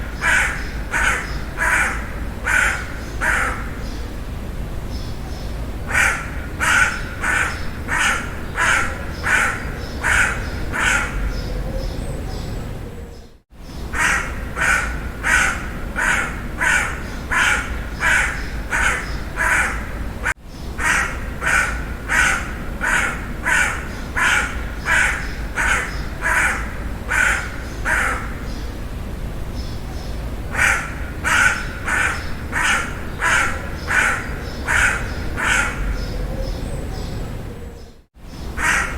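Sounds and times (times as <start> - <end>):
crow cawing: 0.0 - 3.9, 5.9 - 11.4, 13.9 - 28.5, 30.5 - 36.2, 38.6 - 38.9.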